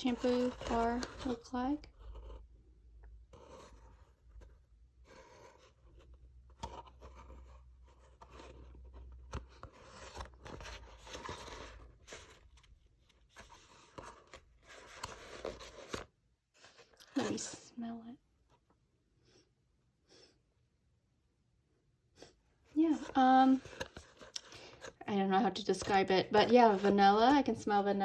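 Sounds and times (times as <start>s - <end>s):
paper packaging rustling: 0.0s - 2.2s.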